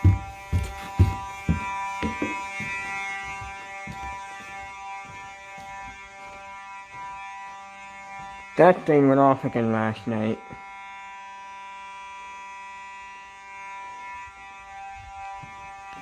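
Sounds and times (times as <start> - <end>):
low thumps: 0.0 - 2.5
fire alarm horn buzzing: 0.0 - 16.0.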